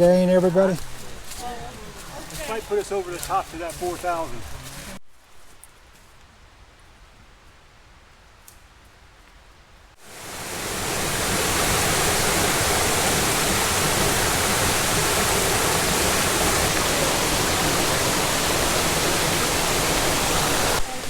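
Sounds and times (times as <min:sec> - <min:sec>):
loud rushing noise: 0:10.0 - 0:20.8.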